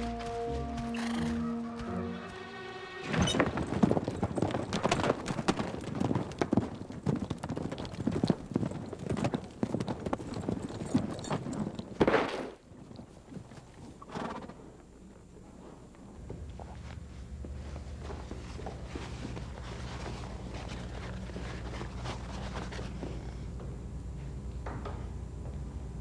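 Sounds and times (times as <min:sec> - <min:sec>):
horse call: 0:00.0 - 0:03.7
horse hooves beating rapidly: 0:00.0 - 0:10.9.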